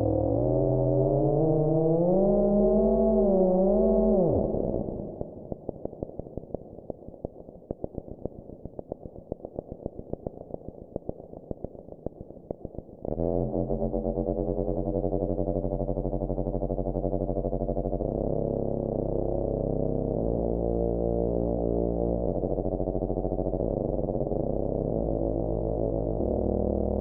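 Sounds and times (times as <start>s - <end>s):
buzzy synthesizer drone: 0.0s - 5.4s, 13.1s - 27.0s.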